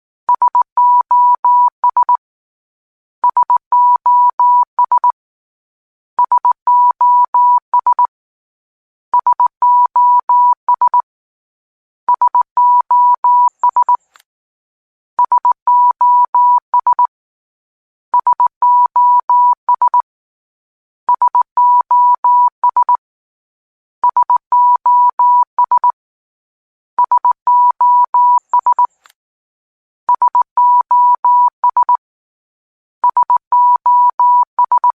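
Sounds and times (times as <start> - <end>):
morse code beeps: 0.3 - 2.2, 12.1 - 14.0, 15.2 - 17.1, 18.2 - 20.0, 21.1 - 23.0, 24.0 - 26.0, 27.0 - 29.0, 30.1 - 32.0, 33.0 - 34.9.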